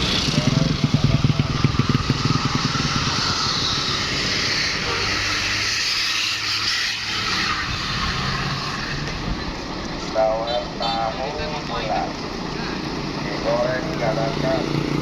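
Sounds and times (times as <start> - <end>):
vehicle engine running: 0.0 - 5.2
traffic hiss: 0.0 - 15.0.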